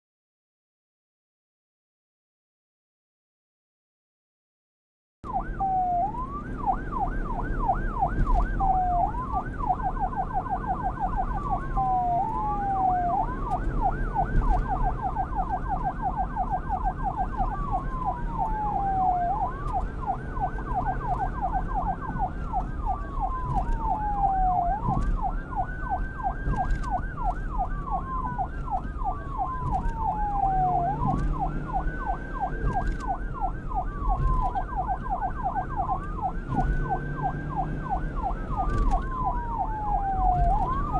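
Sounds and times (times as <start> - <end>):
police siren yelp and wail: 5.2 - 40.9.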